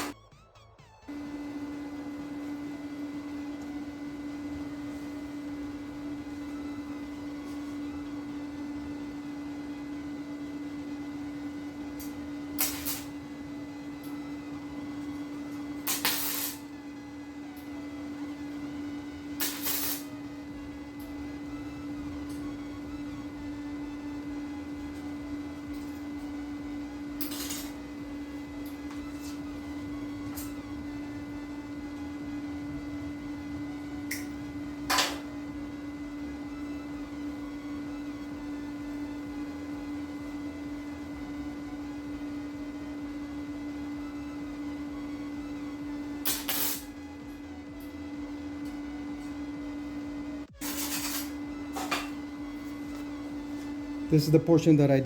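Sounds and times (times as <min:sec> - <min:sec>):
steady hum: 0:00.0 - 0:00.2, 0:01.1 - 0:55.0
welding arc crackle: 0:12.5 - 0:13.3, 0:15.8 - 0:16.8, 0:19.4 - 0:20.2, 0:46.2 - 0:47.0, 0:50.5 - 0:51.4.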